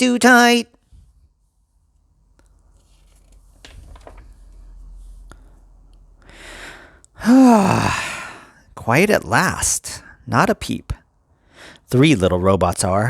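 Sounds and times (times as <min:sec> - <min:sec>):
person breathing in: 0:06.2 - 0:08.7
long loud voiced sigh: 0:06.3 - 0:08.6.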